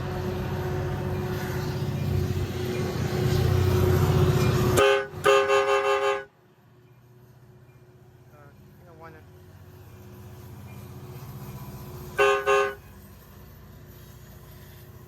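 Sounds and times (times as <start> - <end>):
multi-note train horn: 4.8 - 6.5, 12.1 - 13.0.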